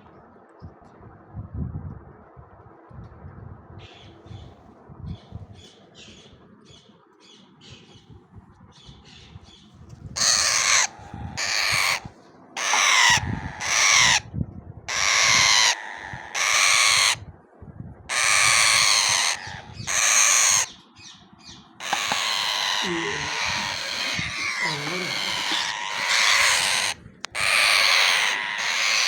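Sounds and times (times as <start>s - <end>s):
parakeet chicks chirping: 10.2s - 12.0s, 12.6s - 14.2s, 14.9s - 17.2s, 18.1s - 20.8s, 21.8s - 29.0s
harsh parakeet squawks: 10.2s - 14.3s, 14.9s - 17.2s, 18.1s - 20.8s, 21.8s - 29.0s.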